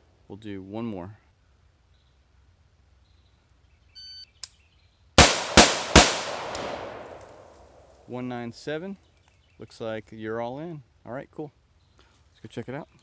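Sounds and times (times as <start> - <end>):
rifle shots echoing: 5.2 - 7.9.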